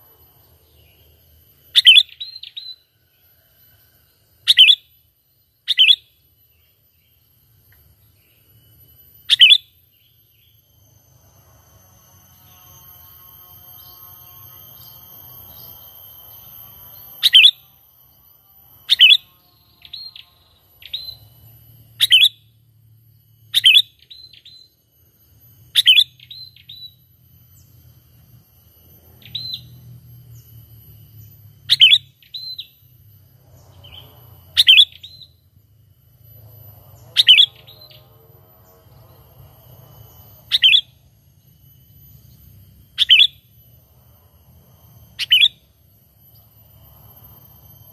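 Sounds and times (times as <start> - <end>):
bird calling: 1.7 - 2.8, 9.3 - 9.7, 17.0 - 17.7, 31.7 - 32.8, 33.6 - 35.3, 37.0 - 39.1, 40.4 - 41.0, 43.0 - 43.5, 45.1 - 45.7.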